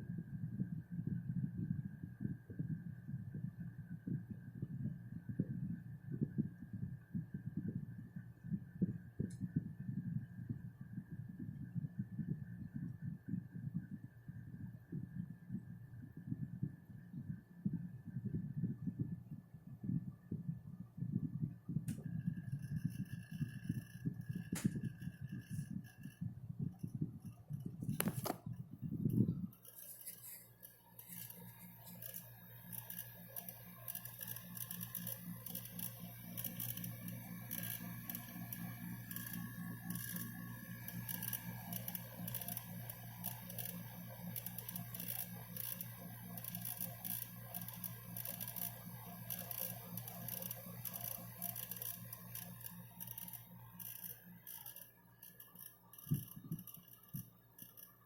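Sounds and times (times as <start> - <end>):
dehumidifier humming: 0.0 - 57.6.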